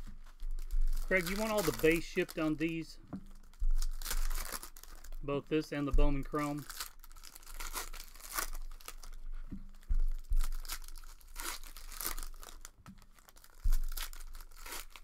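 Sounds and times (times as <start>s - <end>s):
card wrappers tearing and crinkling: 0.0s - 15.0s
dull thumps: 3.0s - 5.2s, 9.2s - 10.9s, 12.9s - 14.3s.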